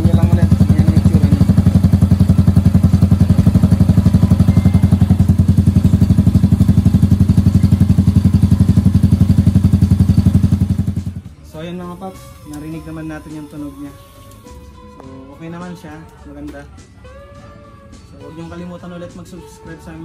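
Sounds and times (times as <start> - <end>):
motorcycle engine idling loudly: 0.0 - 11.3.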